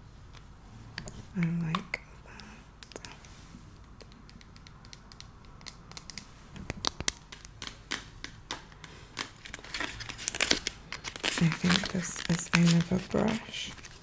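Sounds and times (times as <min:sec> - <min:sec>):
hands handling cardboard packaging: 0:06.6 - 0:14.0.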